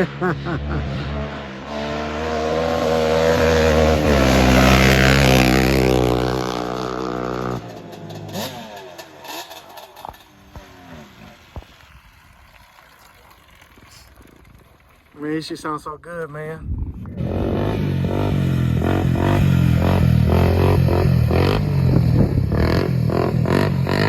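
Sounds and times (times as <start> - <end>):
quad bike engine running: 0.0 - 11.7, 17.1 - 24.0.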